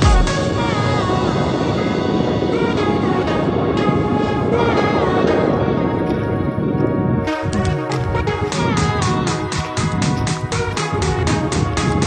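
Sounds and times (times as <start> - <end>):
fast beat music with synth melody: 0.0 - 3.7, 7.2 - 12.0.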